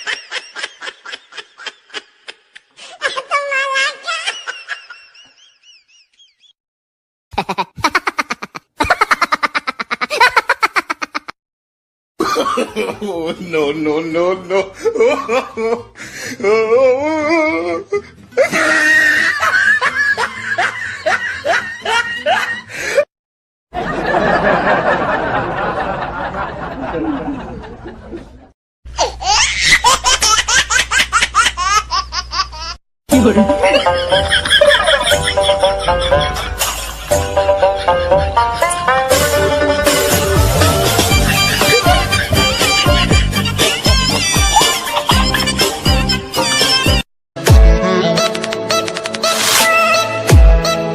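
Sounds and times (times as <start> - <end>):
staccato cackling laugh: 0.0 - 2.8, 7.4 - 11.4, 18.4 - 22.8, 29.6 - 46.7.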